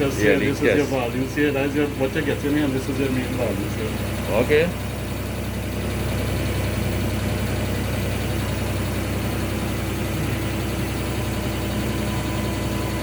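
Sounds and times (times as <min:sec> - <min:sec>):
fast even pulsing: 0:00.0 - 0:06.3
test bench mechanical drone: 0:00.0 - 0:13.0.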